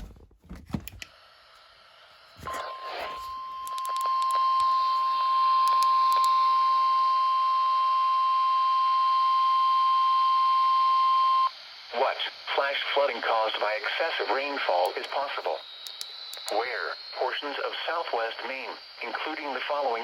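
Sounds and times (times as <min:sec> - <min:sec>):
radio alert tone: 0:02.4 - 0:06.6.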